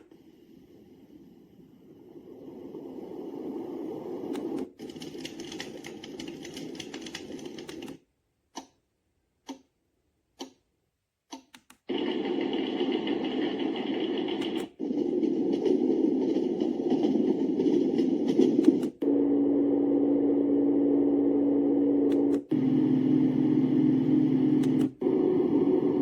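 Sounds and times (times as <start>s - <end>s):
white noise machine: 0.0s - 4.8s, 11.9s - 26.0s
short clicks: 11.3s - 11.9s, 22.1s - 22.6s, 24.6s - 25.0s.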